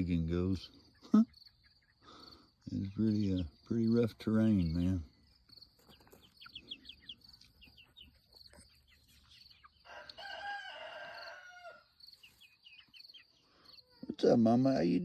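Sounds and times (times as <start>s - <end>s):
chickens clucking: 0.0s - 15.0s
rooster crowing: 9.8s - 12.0s.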